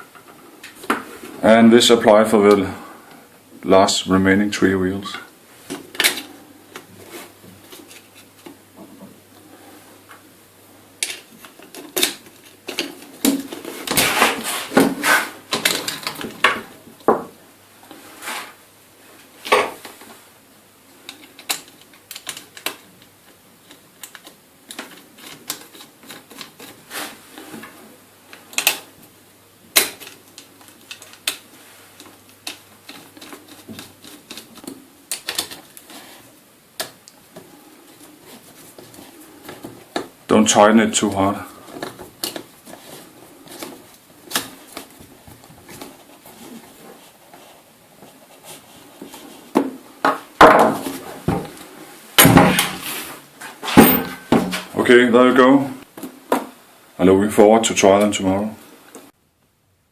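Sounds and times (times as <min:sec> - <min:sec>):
metal and plastic parts clicking: 0:21.1 - 0:26.8, 0:29.7 - 0:31.4, 0:32.0 - 0:35.9.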